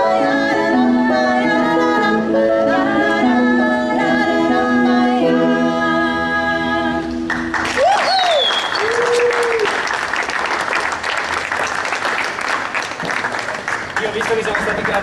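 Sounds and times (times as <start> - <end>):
live singing with long held notes: 0.0 - 7.6
applause: 7.3 - 15.0.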